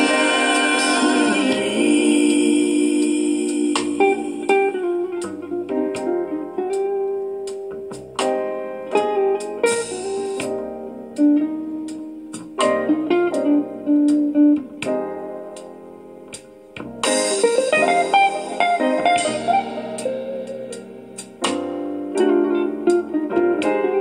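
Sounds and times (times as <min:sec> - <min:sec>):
plucked strings in slow love song: 0:00.0 - 0:07.2
held guitar and keyboard chord: 0:00.0 - 0:16.3, 0:16.9 - 0:24.0.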